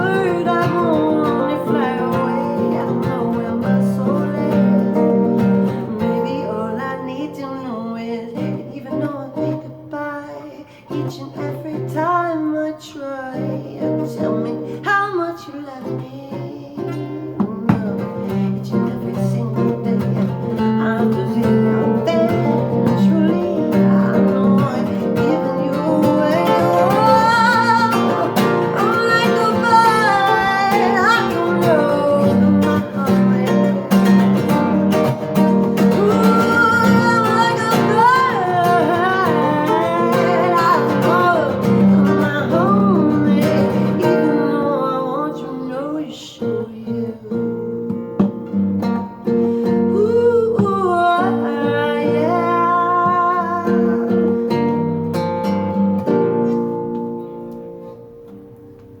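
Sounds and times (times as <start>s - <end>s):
woman singing: 0.0s - 57.7s
guitar accompaniment: 0.0s - 59.0s.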